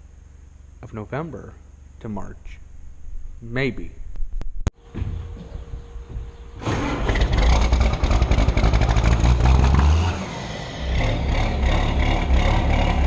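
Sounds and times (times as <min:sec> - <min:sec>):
vehicle engine rumbling: 0:00.0 - 0:13.0.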